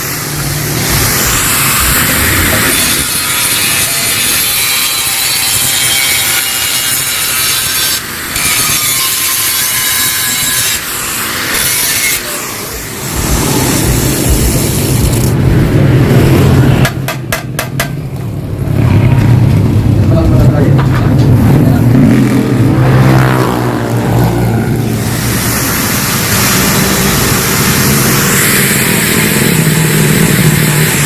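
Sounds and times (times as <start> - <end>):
harsh grinding on metal: 0.0 - 15.4
motorcycle engine droning: 18.0 - 31.0.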